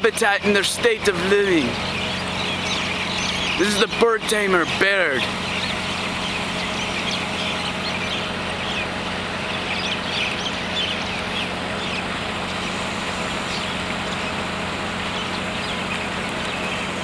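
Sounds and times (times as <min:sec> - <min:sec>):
birds chirping: 0:00.0 - 0:17.0
steady low hum: 0:00.0 - 0:17.0.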